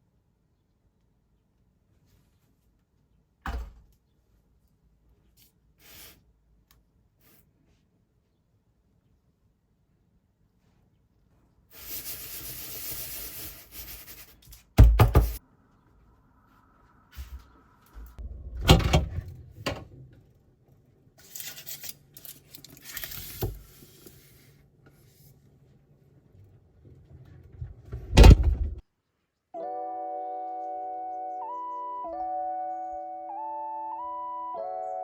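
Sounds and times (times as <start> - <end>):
loud thud: 28.1 - 28.8.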